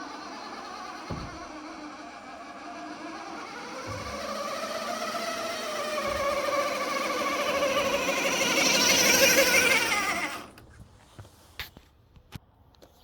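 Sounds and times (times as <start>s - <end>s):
model truck motor whining: 0.0s - 10.8s.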